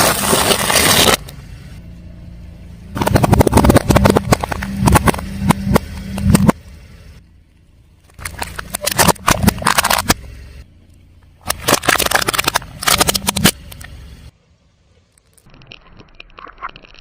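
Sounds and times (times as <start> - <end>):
tyre crushing crunchy objects: 0.0 - 1.3, 8.1 - 10.3, 11.4 - 13.6
low vehicle rumble: 0.0 - 15.7.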